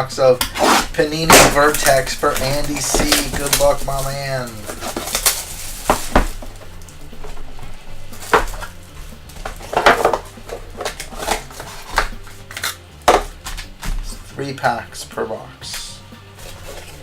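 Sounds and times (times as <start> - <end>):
cardboard box being handled: 0.5 - 12.4, 16.4 - 17.0
wrapper crinkling: 0.9 - 14.2.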